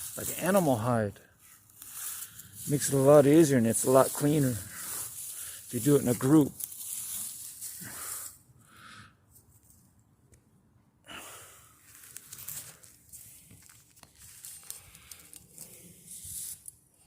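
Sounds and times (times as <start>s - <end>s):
dry palm fibre rustling and tearing: 0.0s - 8.4s, 11.8s - 16.7s.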